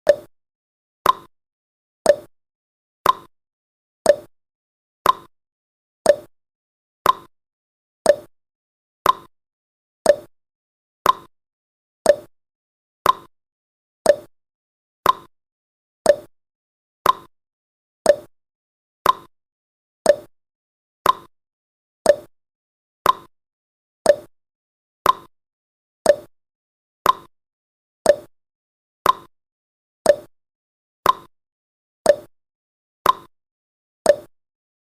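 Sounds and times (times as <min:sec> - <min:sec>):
clock-like ticks: 0:00.0 - 0:00.3, 0:01.0 - 0:01.3, 0:02.1 - 0:02.3, 0:03.0 - 0:03.3, 0:04.0 - 0:04.3, 0:05.0 - 0:05.3, 0:06.0 - 0:06.3, 0:07.0 - 0:07.3, 0:08.0 - 0:08.3, 0:09.0 - 0:09.3, 0:10.0 - 0:10.3, 0:11.0 - 0:11.3, 0:12.0 - 0:12.3, 0:13.0 - 0:13.3, 0:14.0 - 0:14.3, 0:15.0 - 0:15.3, 0:16.0 - 0:16.3, 0:17.0 - 0:17.3, 0:18.0 - 0:18.3, 0:19.0 - 0:19.3, 0:20.0 - 0:20.3, 0:21.0 - 0:21.3, 0:22.0 - 0:22.3, 0:23.0 - 0:23.3, 0:24.0 - 0:24.3, 0:25.0 - 0:25.3, 0:26.0 - 0:26.3, 0:27.0 - 0:27.3, 0:28.0 - 0:28.4, 0:29.0 - 0:29.3, 0:30.0 - 0:30.4, 0:31.0 - 0:31.3, 0:32.0 - 0:32.4, 0:33.0 - 0:33.3, 0:34.0 - 0:34.4.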